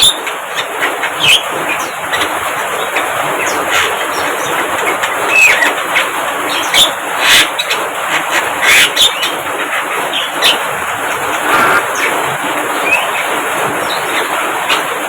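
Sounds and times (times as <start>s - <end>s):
myna birds chattering: 6.5s - 14.8s.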